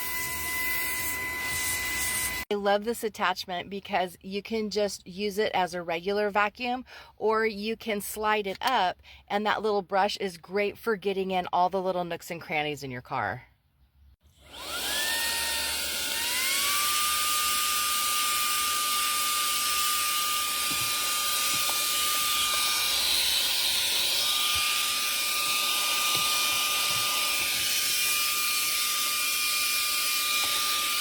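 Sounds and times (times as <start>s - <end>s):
handheld vacuum motor whine: 0.0s - 2.5s, 14.3s - 31.0s.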